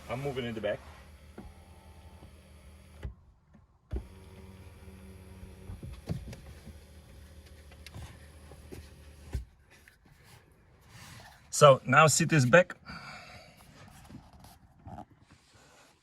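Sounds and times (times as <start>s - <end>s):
electric seat motor humming: 0.9s - 3.2s, 3.9s - 9.4s.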